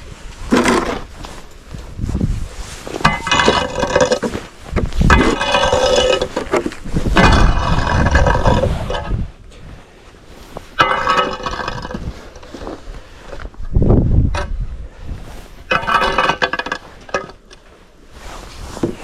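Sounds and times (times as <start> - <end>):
scraping ice off hard surface: 2.8 - 9.2, 15.7 - 17.4.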